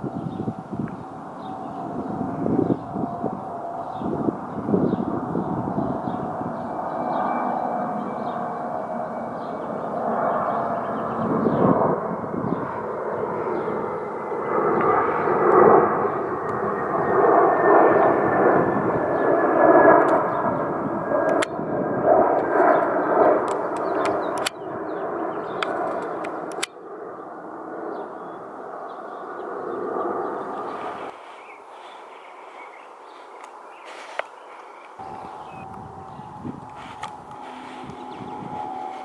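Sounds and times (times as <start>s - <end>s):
jet airliner passing overhead: 0.0s - 39.0s
sharp clicks: 23.5s - 24.6s, 25.6s - 26.7s
thin falling whine: 33.4s - 39.0s.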